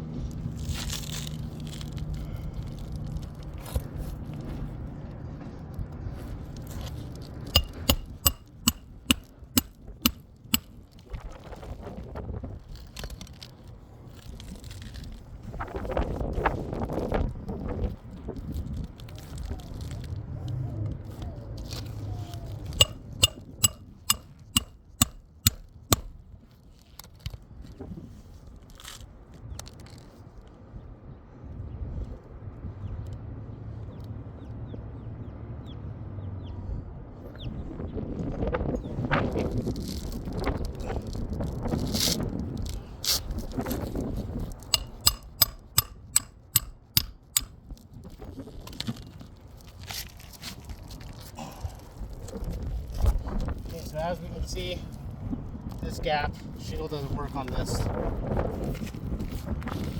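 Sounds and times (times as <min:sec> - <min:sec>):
hammer striking a nail: 0:07.6 - 0:10.7, 0:22.8 - 0:26.2, 0:44.8 - 0:47.5
light hammer taps: 0:07.6 - 0:10.7, 0:22.8 - 0:26.1, 0:44.8 - 0:47.5.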